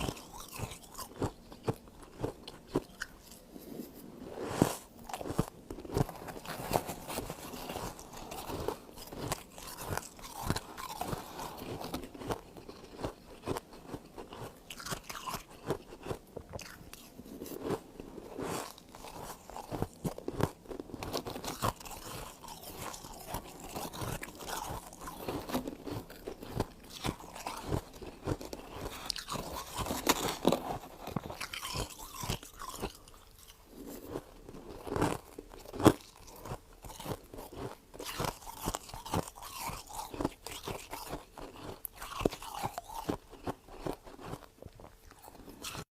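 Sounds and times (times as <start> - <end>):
crunching and chewing frost: 0.0 - 45.9.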